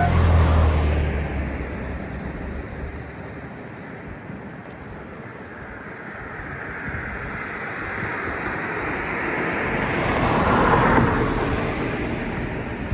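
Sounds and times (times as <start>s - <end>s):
diesel railcar rumbling past: 0.0s - 4.5s, 8.7s - 12.9s.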